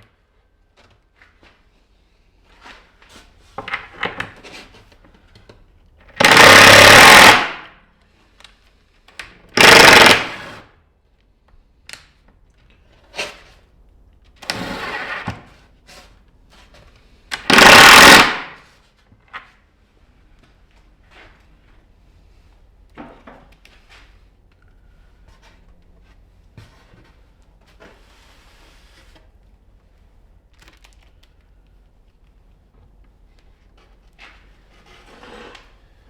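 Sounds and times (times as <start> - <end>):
impact driver running: 6.1 - 7.7, 9.6 - 10.6, 17.4 - 18.6.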